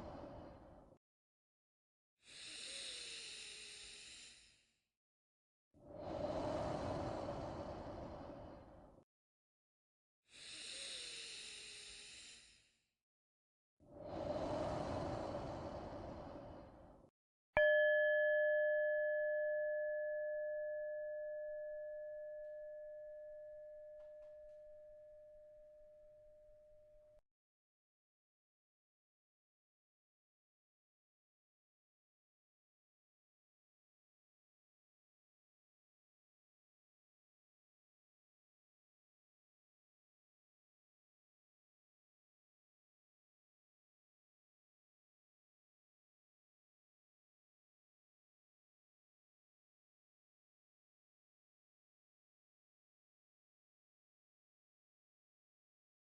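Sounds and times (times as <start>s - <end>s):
person breathing deeply: 2.3s - 4.2s, 5.9s - 9.0s, 10.3s - 12.4s, 13.9s - 17.1s
meditation bell ringing: 17.6s - 27.2s.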